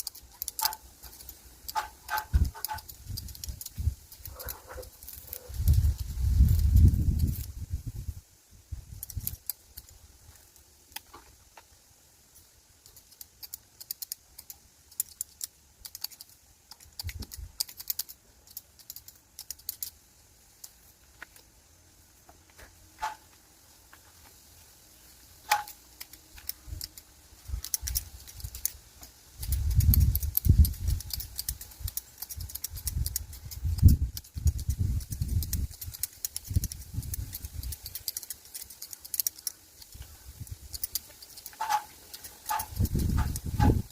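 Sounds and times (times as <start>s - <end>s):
pruning scissors snipping: 0.0s - 7.6s, 25.4s - 43.9s.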